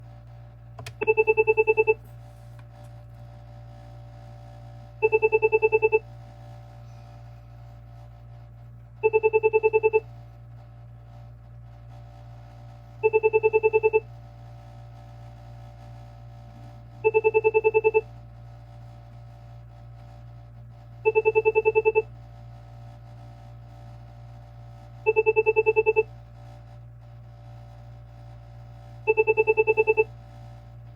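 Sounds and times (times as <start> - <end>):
phone ringing with chirping beeps: 1.0 - 2.0, 5.0 - 6.0, 9.0 - 10.0, 13.0 - 14.0, 17.1 - 18.1, 21.1 - 22.1, 25.1 - 26.1, 29.1 - 30.1.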